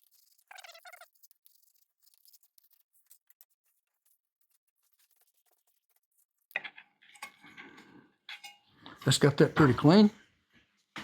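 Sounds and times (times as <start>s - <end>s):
faint scratching and scraping: 0.0s - 10.8s.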